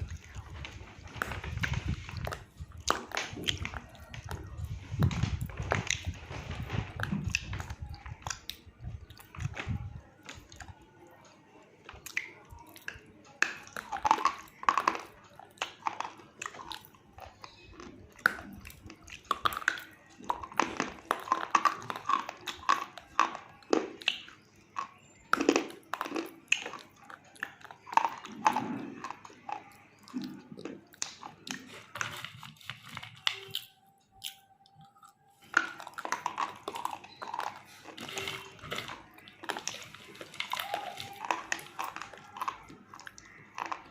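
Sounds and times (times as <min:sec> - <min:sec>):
chewing hard mineral crunches: 0:11.9 - 0:43.9.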